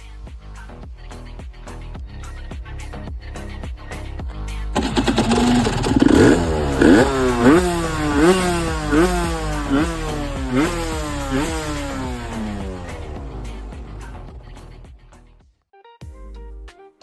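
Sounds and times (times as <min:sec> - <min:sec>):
motorcycle engine revving: 0:04.8 - 0:15.2.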